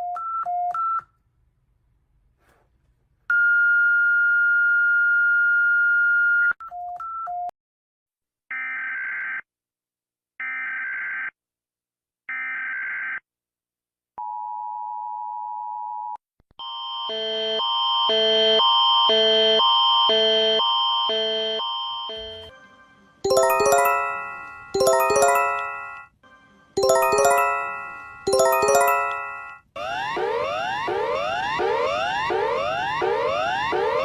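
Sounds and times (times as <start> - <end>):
alarm of alternating chords: 23.3 - 26.1, 26.8 - 34.0.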